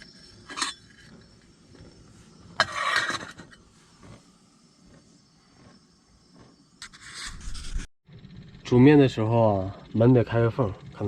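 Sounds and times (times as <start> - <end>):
camping stove and pot handling: 0.0 - 4.4.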